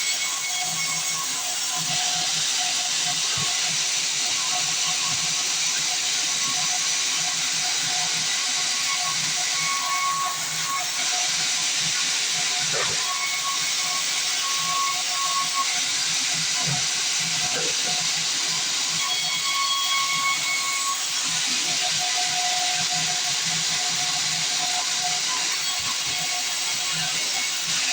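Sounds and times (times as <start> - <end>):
band sawmill hissing: 0.0 - 21.4.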